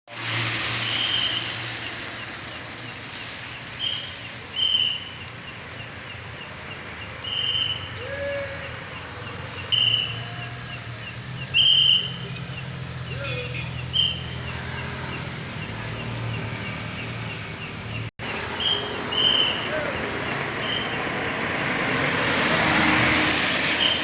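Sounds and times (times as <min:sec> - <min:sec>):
vehicle engines humming: 0:00.1 - 0:24.0
shrill whistle blasts: 0:07.2 - 0:15.2, 0:18.6 - 0:19.8, 0:23.7 - 0:24.0
rain hiss: 0:18.2 - 0:24.0.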